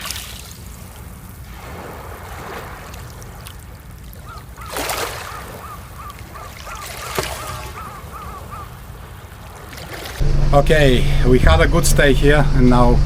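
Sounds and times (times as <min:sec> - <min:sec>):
water lapping in harbour: 0:00.0 - 0:10.2
low rumble: 0:10.2 - 0:13.0.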